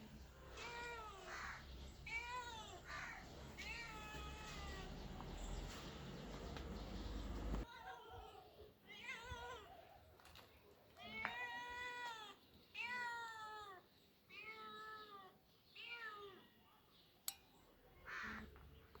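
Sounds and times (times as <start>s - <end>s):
cat meowing: 0.4s - 5.2s, 8.9s - 9.8s.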